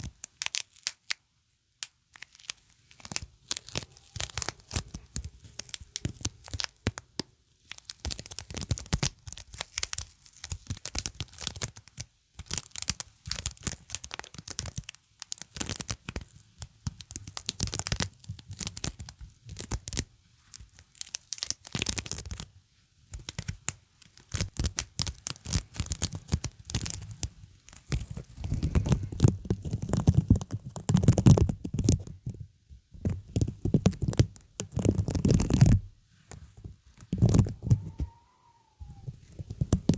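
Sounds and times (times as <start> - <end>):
sticky surfaces peeling apart: 2.1 - 6.8.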